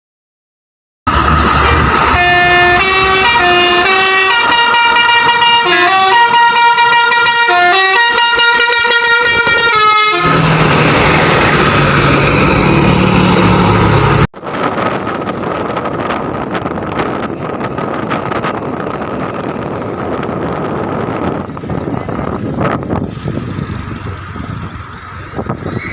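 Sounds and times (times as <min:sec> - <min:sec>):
loud rough low sound: 0:01.1 - 0:06.2, 0:09.3 - 0:25.9
rushing noise: 0:01.1 - 0:25.9
bus musical horn melody: 0:01.8 - 0:10.6.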